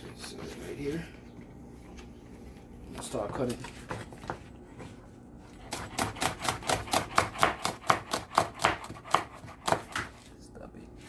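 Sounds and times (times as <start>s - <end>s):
knife chopping on cutting board: 5.7s - 10.3s.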